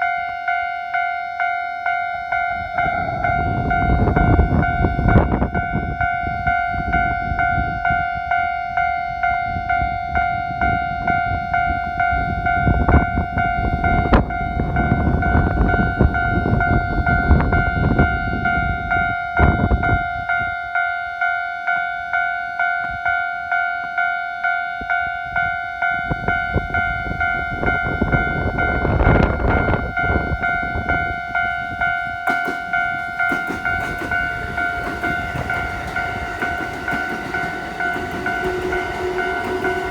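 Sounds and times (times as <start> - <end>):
level crossing alarm ringing: 0.0 - 39.9
low rumbling noise: 2.3 - 5.8.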